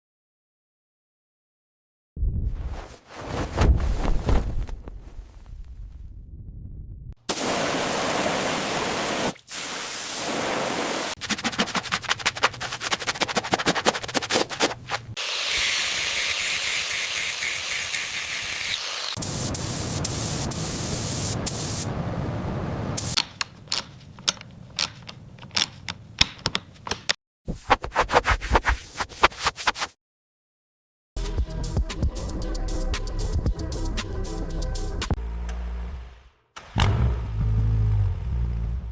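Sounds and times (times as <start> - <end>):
high spraying hiss: 7.3 - 11.2, 15.2 - 21.9
steady hiss: 19.2 - 21.9.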